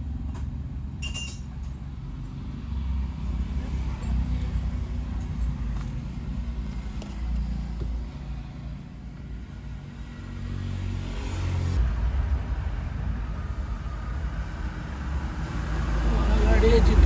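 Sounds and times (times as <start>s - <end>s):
vehicle engine rumble: 0.0s - 17.0s.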